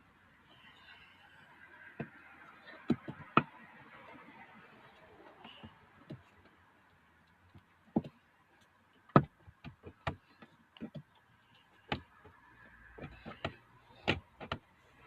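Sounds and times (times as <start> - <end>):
plastic parts clicking and knocking: 9.1 - 12.4, 13.0 - 14.7.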